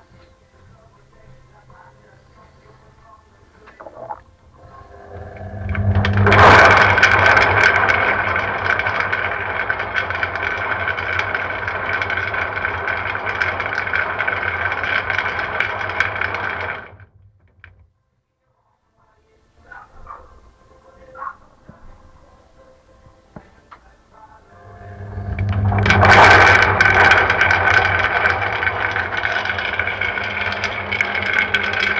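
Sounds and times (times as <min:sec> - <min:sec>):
washing machine running: 0:04.6 - 0:13.7, 0:24.5 - 0:31.9.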